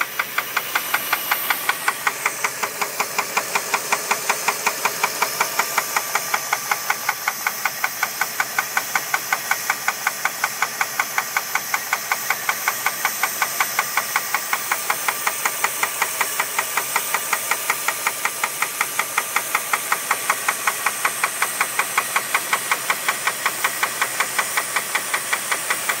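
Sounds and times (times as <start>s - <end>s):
engine running with knock: 0.0s - 26.0s.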